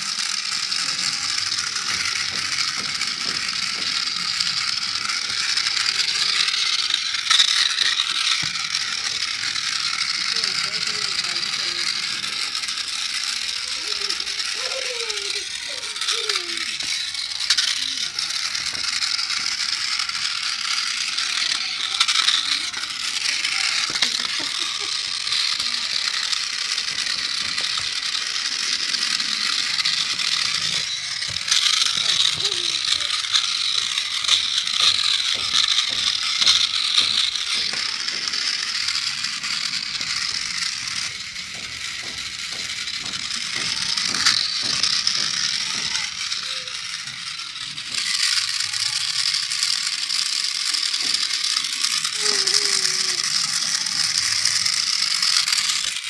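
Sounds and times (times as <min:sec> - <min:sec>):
toy tank motors whirring: 0:00.0 - 0:56.0.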